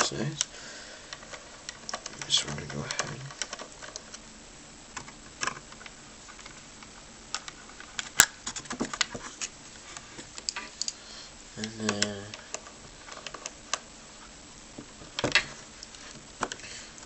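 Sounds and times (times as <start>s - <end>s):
plastic and metal parts clicking: 1.1s - 4.2s.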